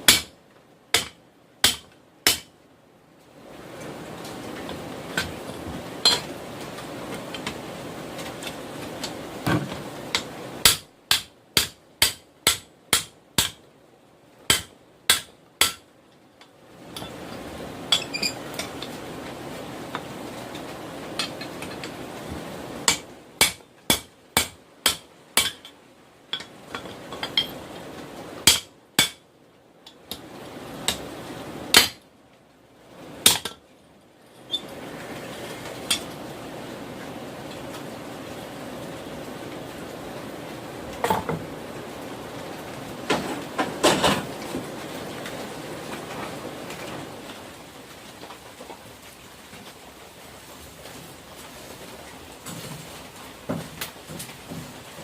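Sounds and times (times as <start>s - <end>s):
hammer striking hot steel on anvil: 0.1s - 0.3s, 1.0s - 2.5s, 6.0s - 6.3s, 10.6s - 13.6s, 14.5s - 15.8s, 22.8s - 25.7s, 28.4s - 29.2s, 31.7s - 32.0s, 33.2s - 33.6s.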